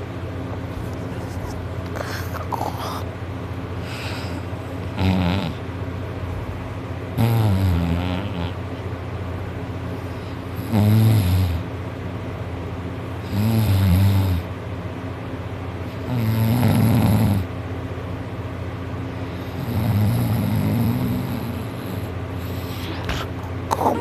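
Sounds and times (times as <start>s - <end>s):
loud rasping snoring: 5.0s - 5.6s, 7.2s - 8.6s, 10.6s - 11.6s, 13.2s - 14.5s, 16.1s - 17.5s, 19.6s - 22.1s.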